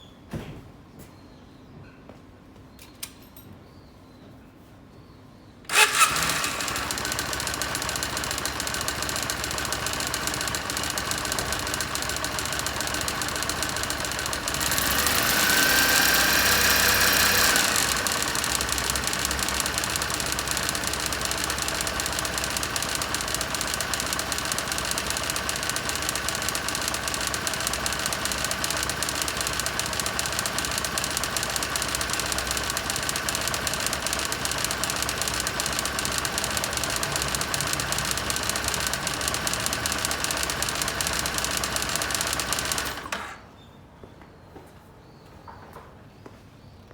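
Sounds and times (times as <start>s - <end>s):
engine revving with rising whine: 5.7s - 32.8s
engine idling with knocking: 5.7s - 43.1s
motorcycle engine starting: 5.7s - 43.4s.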